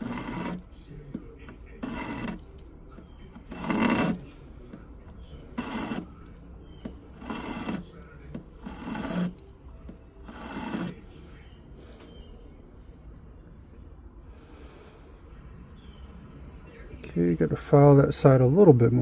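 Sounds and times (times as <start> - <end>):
metal file rasping on ring: 0.0 - 0.8, 1.4 - 11.1.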